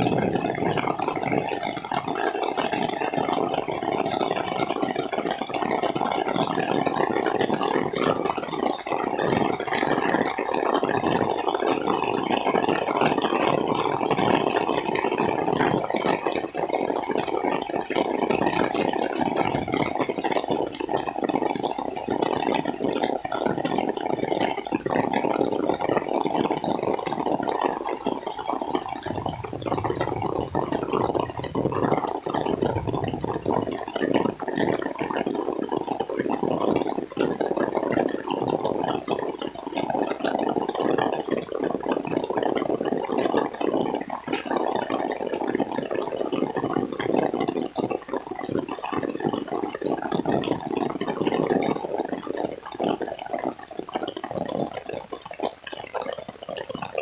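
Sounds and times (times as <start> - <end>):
deep rumble: 0.0 - 1.0, 29.0 - 33.8
heavy rain pouring: 0.0 - 2.2, 28.7 - 35.3.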